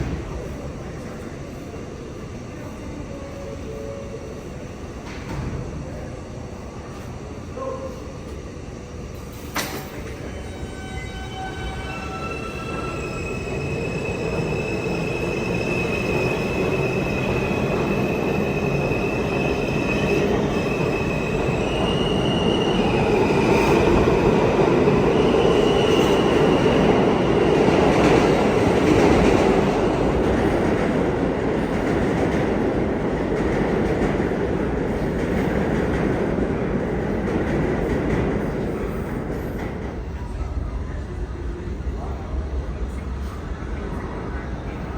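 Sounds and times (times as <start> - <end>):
subway train rumbling on rails: 0.0 - 44.9
train wheels squealing: 10.3 - 24.0, 25.1 - 27.2.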